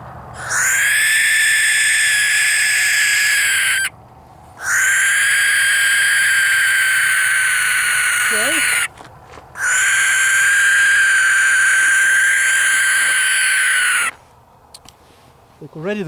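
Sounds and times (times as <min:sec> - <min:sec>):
barn owl hissing screeches: 0:00.4 - 0:03.9, 0:04.6 - 0:08.9, 0:09.6 - 0:14.2.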